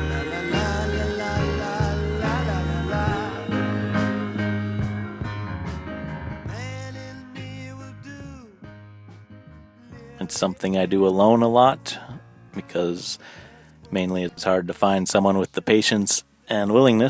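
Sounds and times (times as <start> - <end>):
background music with percussion: 0.0 - 7.5.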